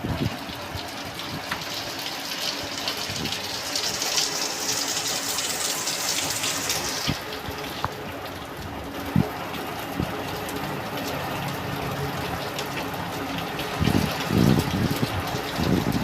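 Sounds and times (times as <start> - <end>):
rain on hard surfaces: 0.0 - 16.0.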